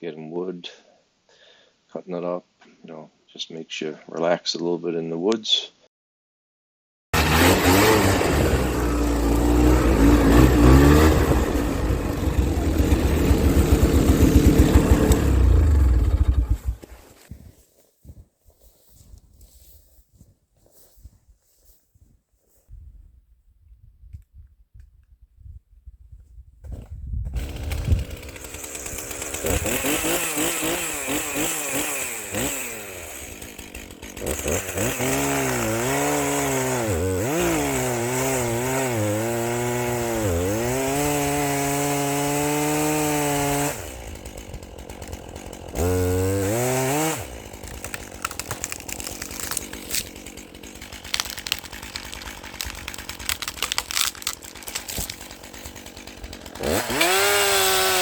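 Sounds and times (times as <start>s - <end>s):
chainsaw cutting wood: 7.2s - 17.5s, 27.2s - 58.0s.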